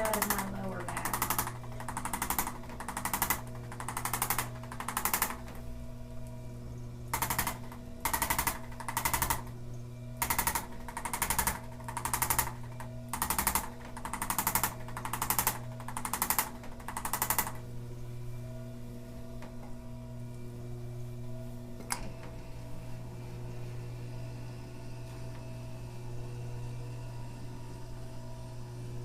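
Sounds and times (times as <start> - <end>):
rapid tapping on back: 0.0 - 5.6, 7.2 - 9.5, 10.2 - 17.6.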